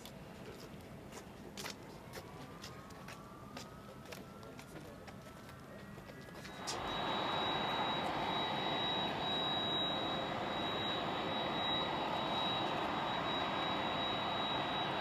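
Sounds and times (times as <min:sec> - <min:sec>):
jet engines roaring: 0:06.4 - 0:15.0.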